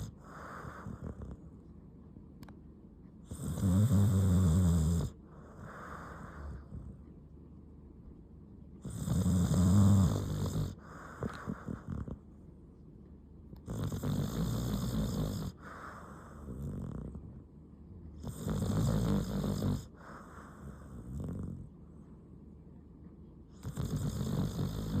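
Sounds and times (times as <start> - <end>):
dog snoring: 0.0 - 1.6, 3.2 - 7.0, 8.8 - 12.3, 13.6 - 17.4, 18.1 - 21.8, 23.5 - 25.0.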